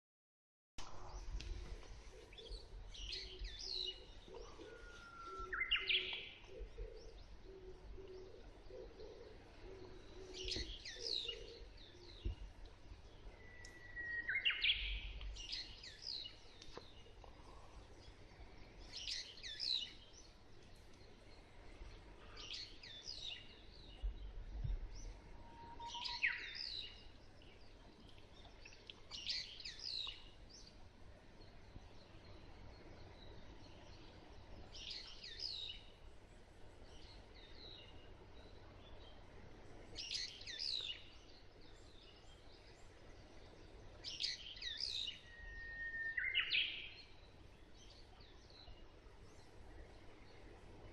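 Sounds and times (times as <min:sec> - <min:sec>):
bush warbler singing: 0:00.8 - 0:50.9
small birds chirping: 0:01.0 - 0:36.1, 0:36.7 - 0:50.9
turtle dove cooing: 0:01.6 - 0:12.4.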